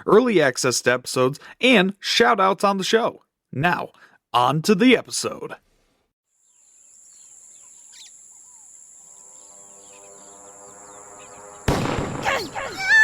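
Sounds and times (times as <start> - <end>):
high insect drone: 6.3 - 13.0
bird chirps and calls: 6.5 - 11.6
low humming drone: 8.8 - 11.8.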